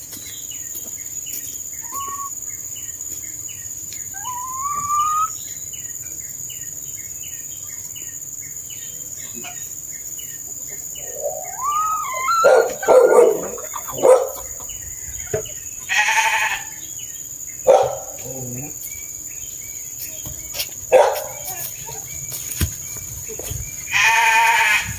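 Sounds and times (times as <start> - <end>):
small bird chirping: 0.1 - 24.5
sheep bleating: 23.9 - 24.8.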